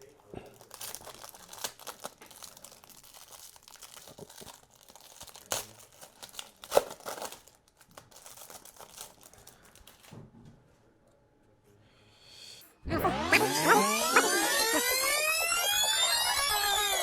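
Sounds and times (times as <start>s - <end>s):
packaging tearing and crinkling: 0.6s - 10.1s.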